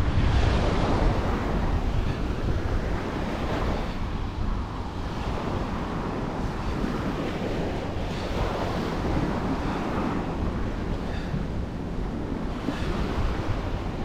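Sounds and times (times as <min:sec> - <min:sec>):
ocean waves breaking on beach: 0:00.0 - 0:14.0.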